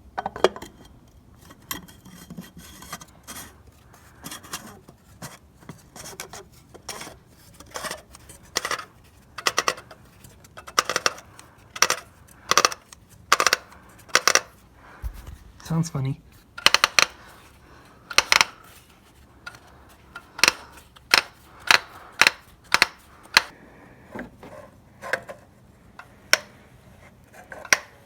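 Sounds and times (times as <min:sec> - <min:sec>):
sharp metallic clicks and scrapes: 0:16.6 - 0:23.5.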